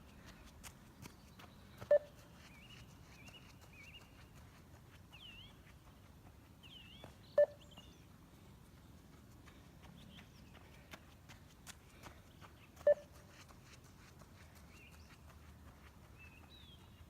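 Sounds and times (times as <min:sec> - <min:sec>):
electronic timing beeps: 0:07.4 - 0:07.7.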